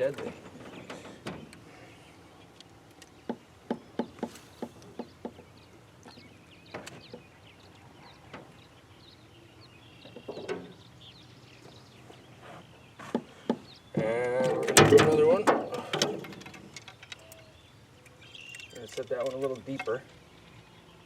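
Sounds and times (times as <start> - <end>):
faint birds chirping: 0.0 - 21.0
fishing tackle clicks and knocks: 14.4 - 17.5, 18.4 - 20.6.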